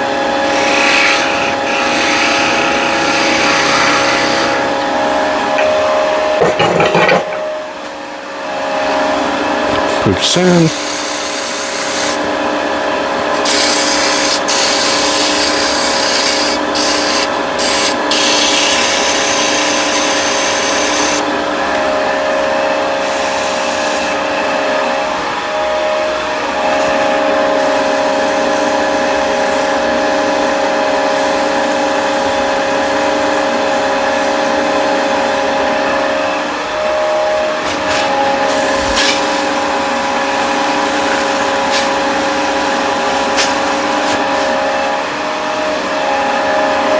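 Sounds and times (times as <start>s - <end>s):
lathe motor whine: 0.0s - 6.5s, 7.2s - 46.9s
sandpaper sanding spinning wood: 10.7s - 12.2s, 13.4s - 21.2s.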